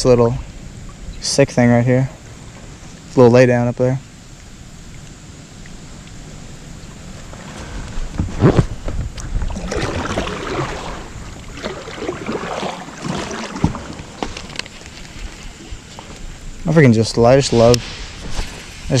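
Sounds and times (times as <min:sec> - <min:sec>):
paddle splashing in water: 0:07.1 - 0:16.4
sharp knocks on kayak: 0:13.0 - 0:14.4.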